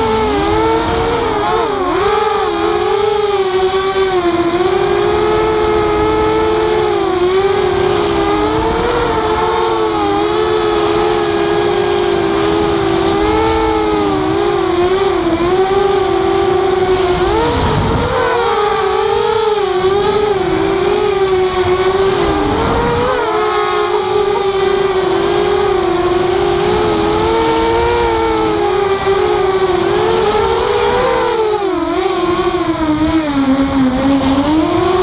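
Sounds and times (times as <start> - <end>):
quadcopter motors whining: 0.0 - 35.0.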